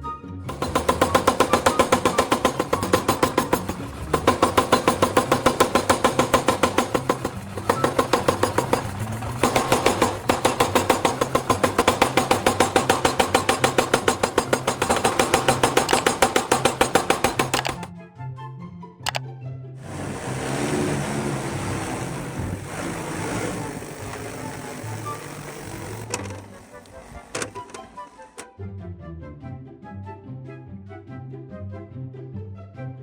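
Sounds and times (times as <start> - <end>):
background music: 0.0 - 33.0
machine clattering: 0.5 - 17.9, 19.8 - 28.4.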